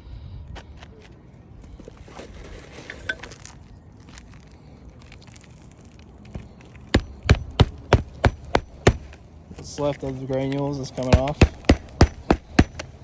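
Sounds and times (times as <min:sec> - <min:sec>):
scraping over shingles: 0:01.8 - 0:13.0
sharp clinking taps: 0:11.1 - 0:13.0.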